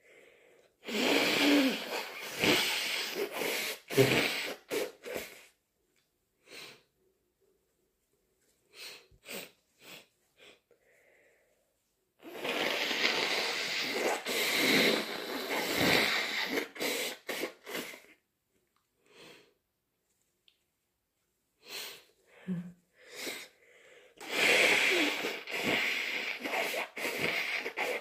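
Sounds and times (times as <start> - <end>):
person sniffing: 0.8 - 5.6, 8.7 - 11.2, 12.2 - 18.2, 21.6 - 28.0
person sneezing: 0.9 - 5.5, 12.2 - 18.1, 24.2 - 28.0
heavy breathing: 21.6 - 28.0.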